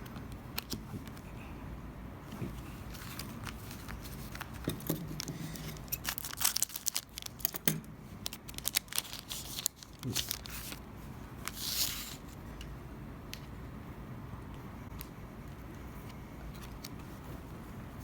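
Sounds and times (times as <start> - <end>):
foil wrapper tearing and crinkling: 5.5 - 7.6, 8.2 - 10.8, 11.4 - 12.2.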